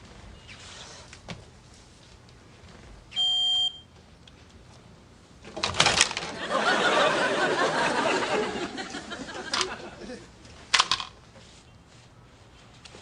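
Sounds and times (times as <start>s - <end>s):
smoke detector beep: 3.1s - 3.9s
studio audience laughing: 6.3s - 10.3s.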